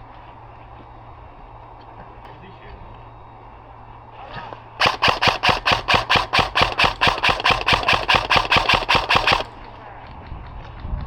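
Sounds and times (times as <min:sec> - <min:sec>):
airsoft gun firing: 0:04.8 - 0:09.6.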